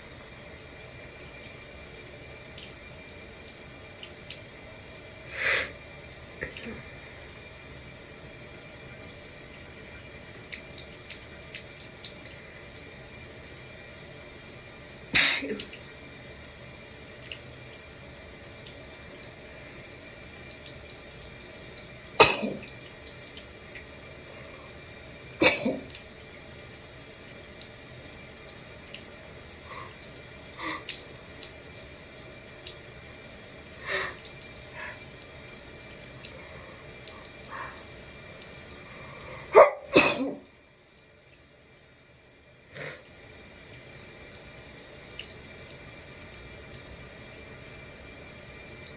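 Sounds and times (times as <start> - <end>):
shower water running: 0.0 - 48.9
person sneezing loudly: 15.2 - 15.6, 39.6 - 40.4.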